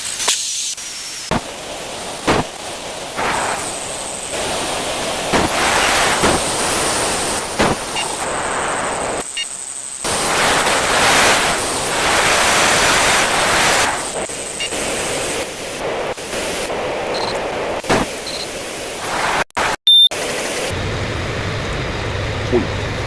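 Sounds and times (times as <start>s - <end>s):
faint high whine: 0.0s - 23.0s
jet engine roar: 0.0s - 23.0s.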